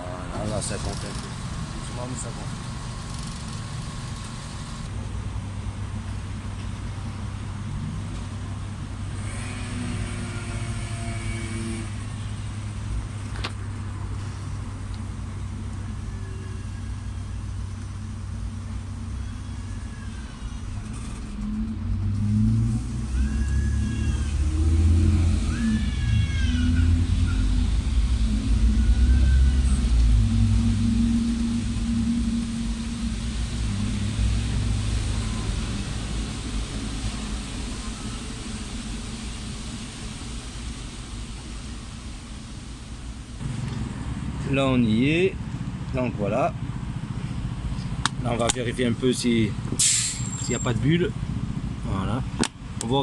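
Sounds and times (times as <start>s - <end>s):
electric tyre inflator running: 9.0s - 12.6s, 22.7s - 43.5s
loud low rumble: 11.9s - 49.8s.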